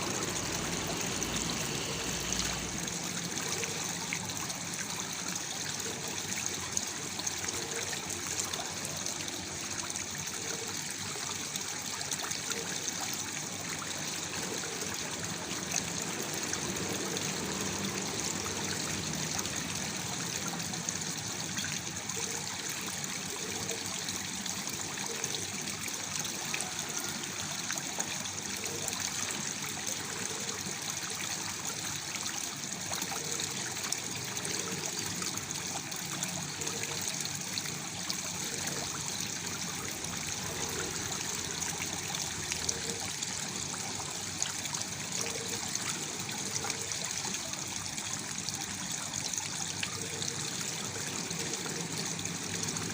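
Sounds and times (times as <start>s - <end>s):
waterfall splashing: 0.0s - 4.3s.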